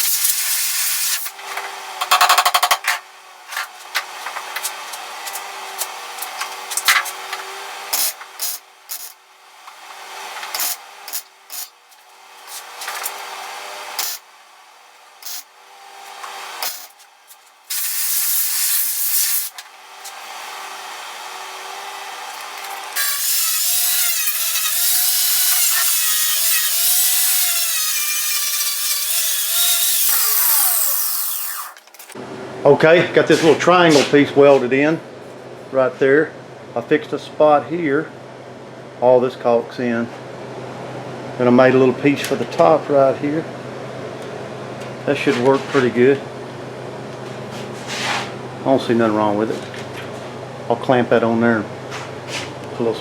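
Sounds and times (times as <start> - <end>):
power tool bursts on sheet metal: 0.0 - 1.4, 7.9 - 9.2, 10.4 - 11.8, 13.9 - 14.3, 15.2 - 17.0, 17.7 - 19.6, 22.9 - 32.2.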